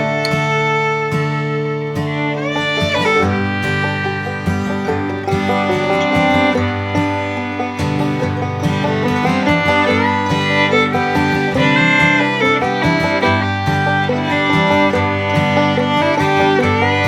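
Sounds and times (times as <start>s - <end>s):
fiddle: 0.0s - 17.0s
plucked strings: 0.0s - 17.0s
upbeat bluegrass instrumental music: 0.0s - 17.0s.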